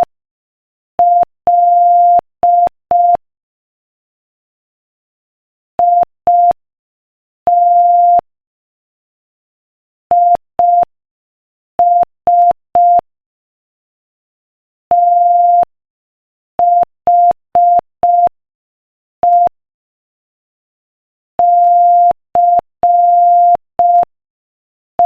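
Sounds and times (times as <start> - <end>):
morse code beeps: 1.0 - 3.2, 7.5 - 8.2.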